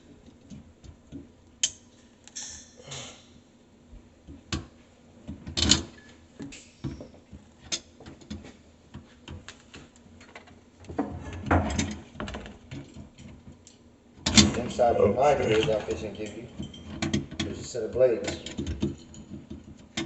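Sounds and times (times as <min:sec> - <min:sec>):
tools clicking and knocking: 0:15.4 - 0:20.0.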